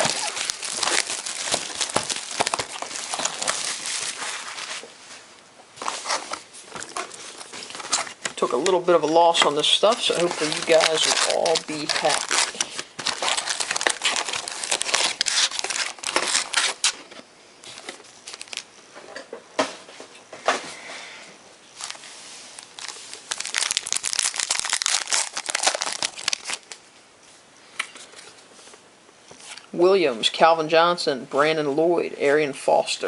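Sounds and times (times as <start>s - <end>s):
card packaging crinkling and tearing: 0.0s - 4.8s, 5.8s - 18.7s, 21.8s - 22.0s, 22.6s - 26.8s.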